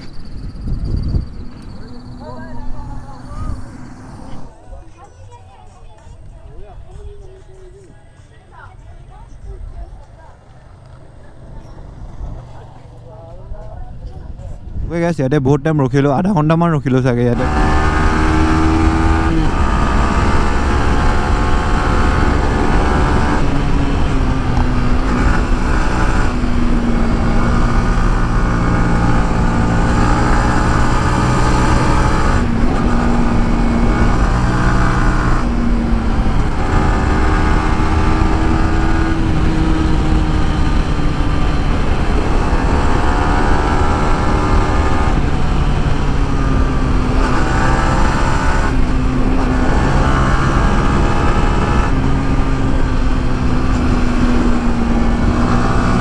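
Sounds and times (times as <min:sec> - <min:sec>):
wind noise on microphone: 0:00.0 - 0:04.5, 0:13.4 - 0:15.6, 0:17.4 - 0:56.0
motorcycle engine: 0:08.3 - 0:13.9, 0:17.3 - 0:56.0.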